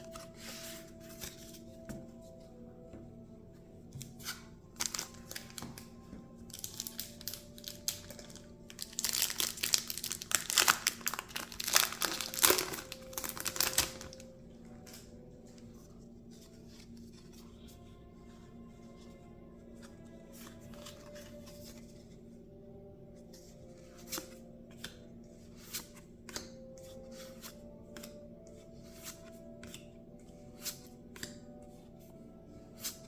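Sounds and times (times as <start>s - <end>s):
foil wrapper tearing and crinkling: 6.5s - 14.2s.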